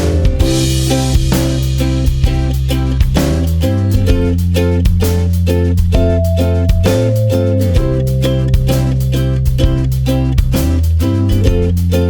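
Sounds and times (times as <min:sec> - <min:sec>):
bass line: 0:00.0 - 0:12.0
drums: 0:00.0 - 0:12.0
strummed guitar chords: 0:00.0 - 0:12.0.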